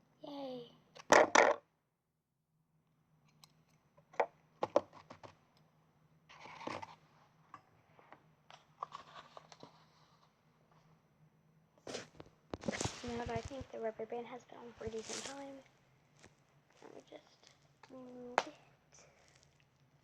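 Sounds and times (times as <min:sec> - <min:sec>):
rustling of small objects: 0:11.9 - 0:13.9, 0:14.5 - 0:18.2.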